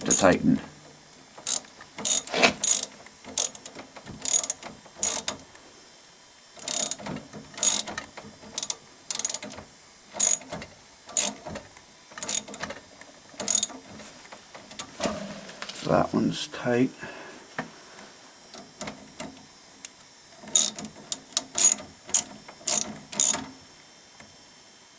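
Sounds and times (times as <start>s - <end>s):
socket ratchet clicking: 1.4s - 5.5s, 6.6s - 14.9s, 20.4s - 23.6s.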